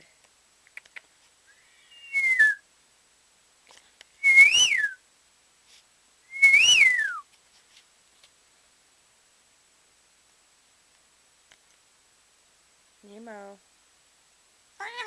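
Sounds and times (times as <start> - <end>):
parrot whistling: 1.5 - 2.6, 4.3 - 5.0.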